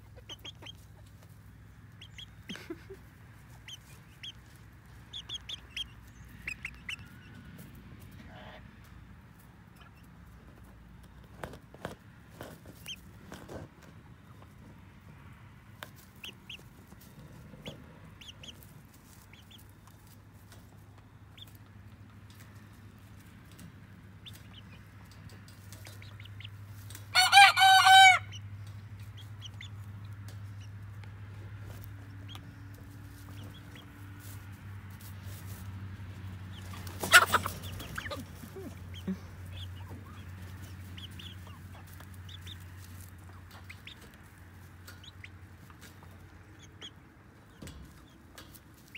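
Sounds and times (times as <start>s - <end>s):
chickens clucking softly: 0.0s - 48.9s
chicken squawk: 25.9s - 28.4s, 36.6s - 42.8s
rooster crowing: 27.1s - 28.3s.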